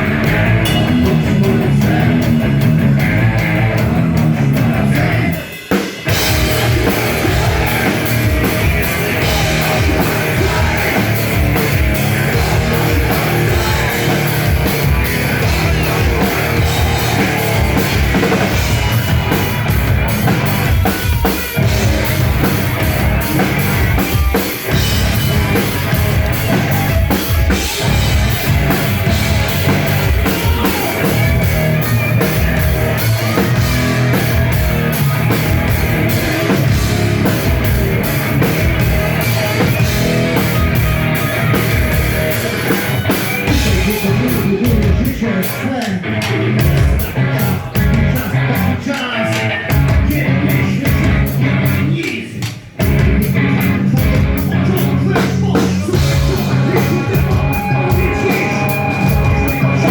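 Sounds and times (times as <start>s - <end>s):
distorted guitar: 0.0s - 59.9s
heavy metal band playing: 0.0s - 59.9s
pounding drum kit: 0.0s - 59.9s.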